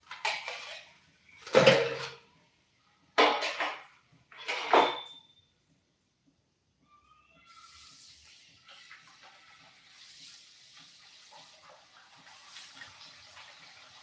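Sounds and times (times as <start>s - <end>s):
utensils and dishes clattering: 0.0s - 2.2s, 3.2s - 5.3s.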